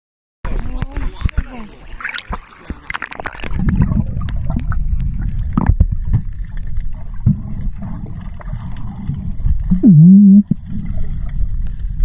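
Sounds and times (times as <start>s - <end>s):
muffled underwater rumble: 2.7s - 12.0s
underwater knocks: 3.1s - 6.6s.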